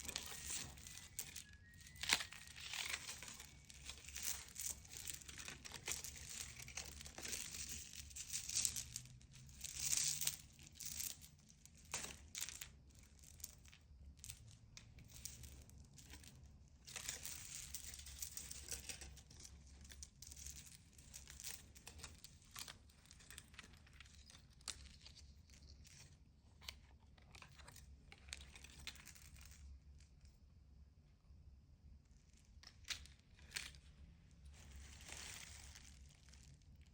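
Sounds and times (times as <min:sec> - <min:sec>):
packaging crinkling and tearing: 0:00.0 - 0:10.4, 0:34.6 - 0:36.6.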